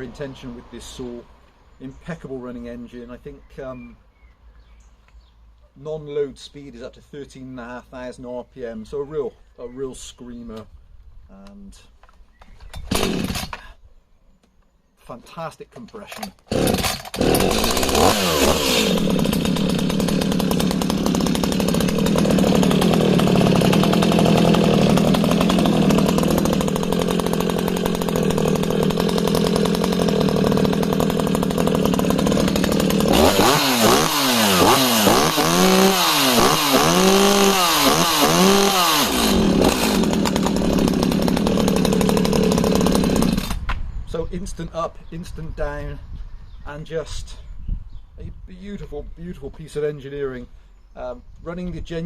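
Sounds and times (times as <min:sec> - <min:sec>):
chainsaw idling and revving: 0:12.9 - 0:13.7, 0:16.1 - 0:43.7.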